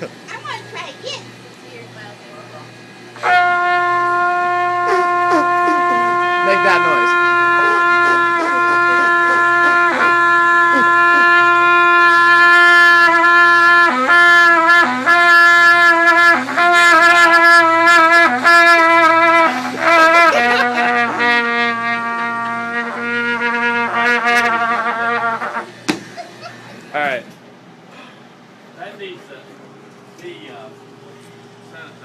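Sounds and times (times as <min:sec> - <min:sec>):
trumpet long held note: 0:03.2 - 0:25.8.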